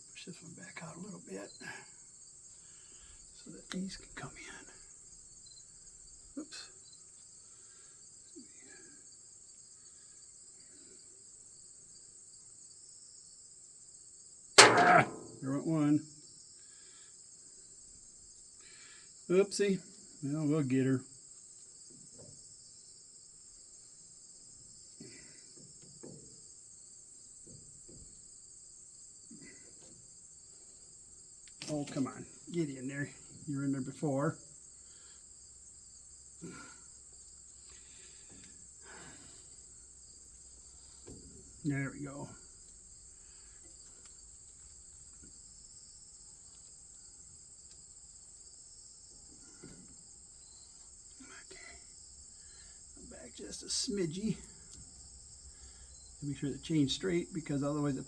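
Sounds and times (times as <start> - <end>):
crickets chirring: 0.0 - 58.0
high-pitched insect chorus: 0.0 - 58.0.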